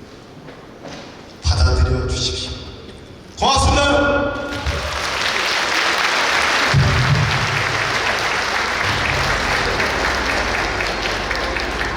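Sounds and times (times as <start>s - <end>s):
audience applauding: 4.5s - 11.9s
music playing: 6.7s - 11.9s.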